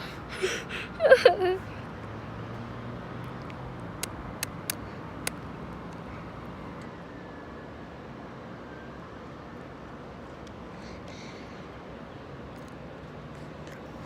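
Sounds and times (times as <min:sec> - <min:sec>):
distant vehicle noise: 0:00.0 - 0:08.3, 0:09.2 - 0:14.0
sharp clicks: 0:03.3 - 0:06.0.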